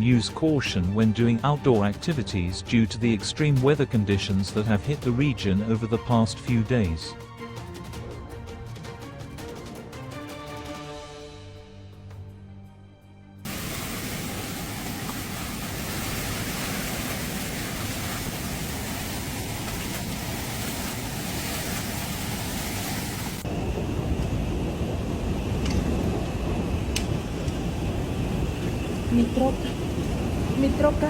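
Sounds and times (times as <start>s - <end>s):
background music: 0.0s - 13.9s
storm roar: 13.5s - 31.0s.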